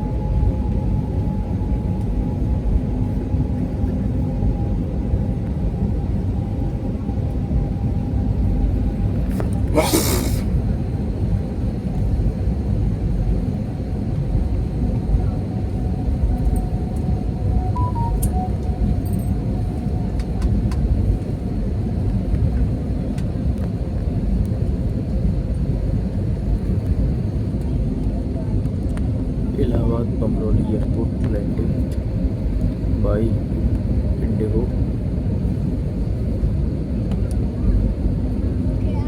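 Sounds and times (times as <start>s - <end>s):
airliner cabin rumble: 0.0s - 39.0s
faint steady tone: 17.7s - 19.3s.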